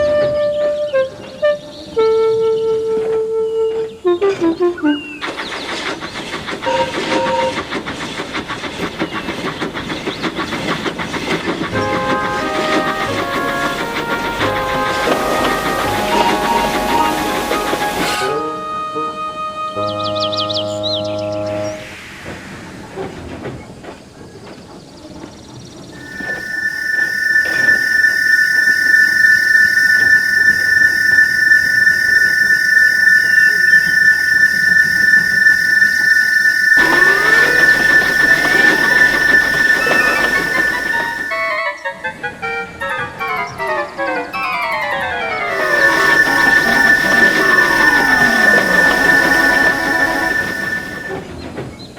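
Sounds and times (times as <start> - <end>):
steam locomotive chuffing: 5.2 - 18.2, 26.0 - 41.5, 45.5 - 51.3
short whistle toots: 26.0 - 41.6, 45.5 - 51.3.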